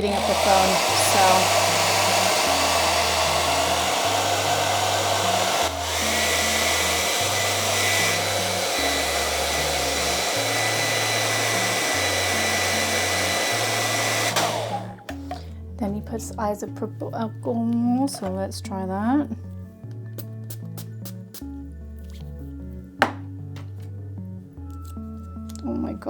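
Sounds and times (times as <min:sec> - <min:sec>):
hairdryer blowing with high whine: 0:00.0 - 0:15.4.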